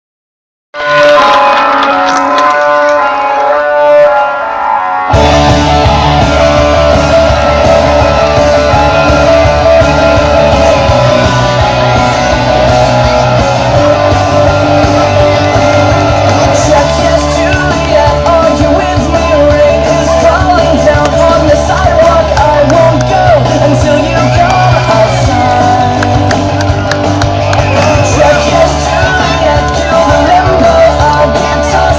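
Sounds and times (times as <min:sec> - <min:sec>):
loud rock music with singing: 0:00.8 - 0:31.9.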